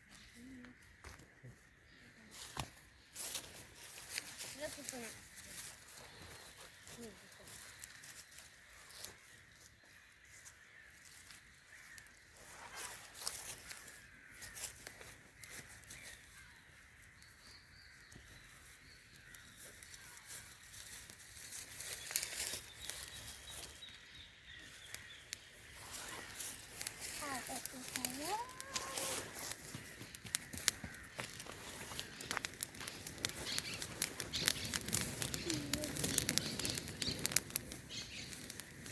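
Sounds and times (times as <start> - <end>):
rustling and crackling: 2.4 - 9.3, 18.6 - 38.9
faint bird chirps: 4.2 - 32.3.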